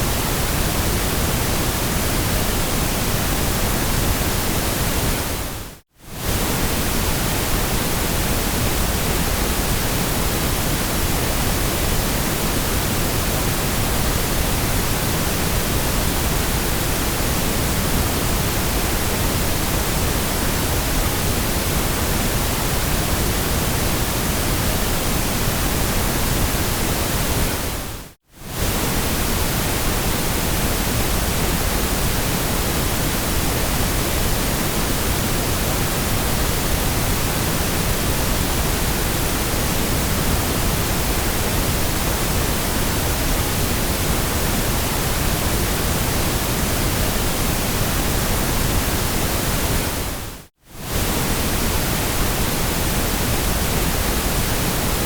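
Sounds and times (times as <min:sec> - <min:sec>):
white noise hiss: 0:00.0 - 0:55.0.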